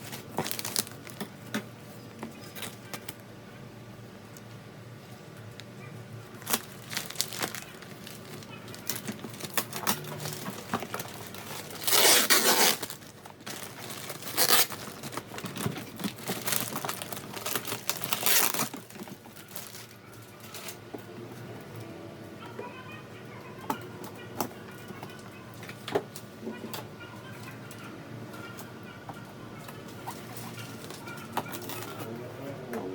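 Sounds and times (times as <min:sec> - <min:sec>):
packaging tearing: 0:00.0 - 0:01.3, 0:06.4 - 0:20.0
packaging crinkling and rustling: 0:00.0 - 0:03.2, 0:06.3 - 0:20.8, 0:29.9 - 0:32.1.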